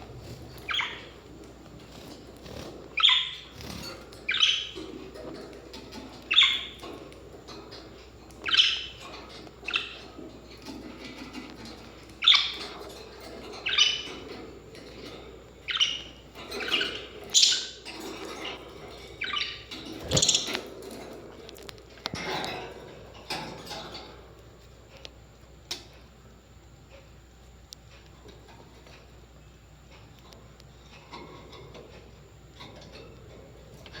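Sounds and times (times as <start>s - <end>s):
birds chirping harshly: 0.0s - 5.2s, 5.8s - 7.0s, 8.0s - 11.4s, 15.6s - 20.7s.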